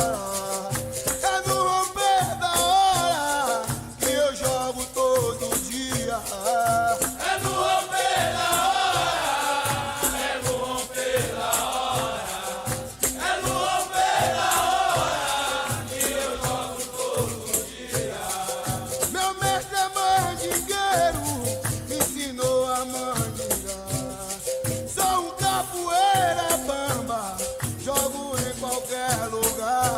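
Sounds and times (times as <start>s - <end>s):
shaker rattling: 0.0s - 29.9s
voices chanting in a group: 5.7s - 21.7s.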